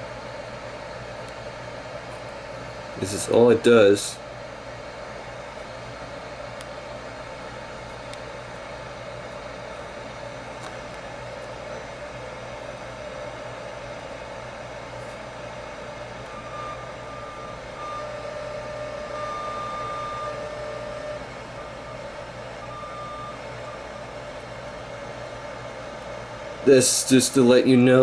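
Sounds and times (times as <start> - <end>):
low hum: 14.8 - 26.7
tv static hiss: 15.0 - 28.0.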